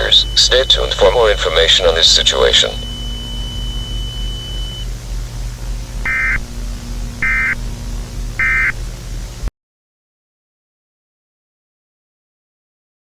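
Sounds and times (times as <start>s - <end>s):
digital data bursts: 0.0s - 9.5s
steady low hum: 0.0s - 9.5s.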